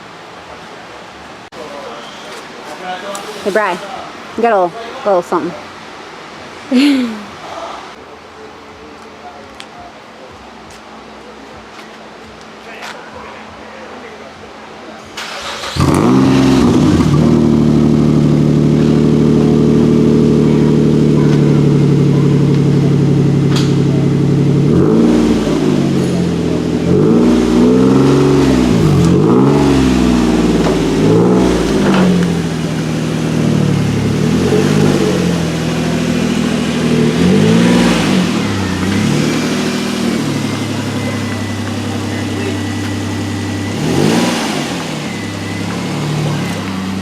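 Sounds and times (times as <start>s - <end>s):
car engine idling and revving: 15.2s - 47.0s.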